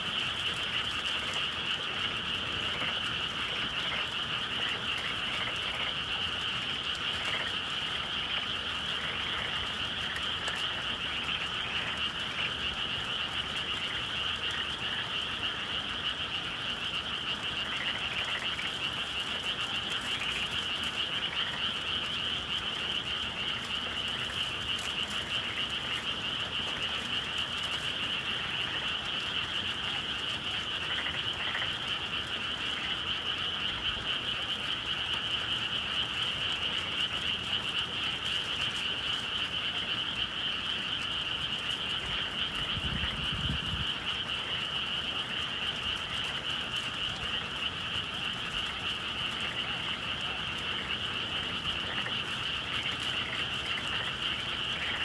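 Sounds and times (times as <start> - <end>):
chorus of frogs calling: 0.0 - 55.0.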